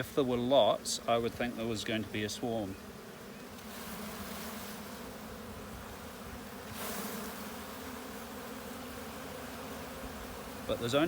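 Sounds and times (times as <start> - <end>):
honeybees buzzing: 0.0 - 11.0.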